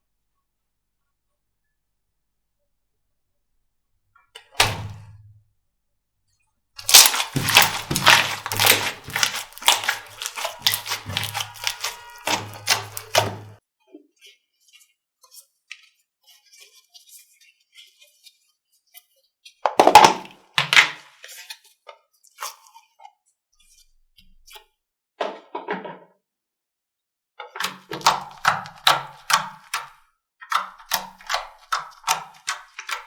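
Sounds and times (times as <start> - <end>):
slime clicking and popping: 6.8 - 13.6, 27.6 - 29.9, 30.5 - 33.0
slime squishing: 6.8 - 13.6, 19.8 - 21.5, 27.6 - 33.0.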